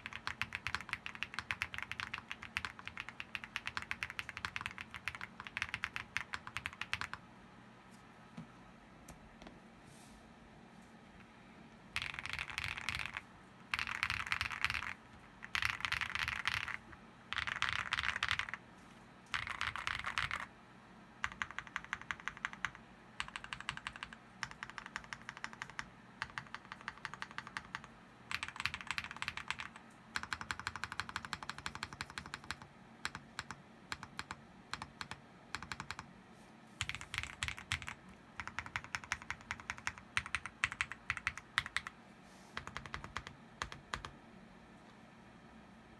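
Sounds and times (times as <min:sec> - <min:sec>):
mechanical keyboard typing: 0:00.0 - 0:07.2, 0:12.0 - 0:18.6, 0:19.3 - 0:20.5, 0:21.2 - 0:36.1, 0:36.8 - 0:41.9, 0:42.6 - 0:44.2.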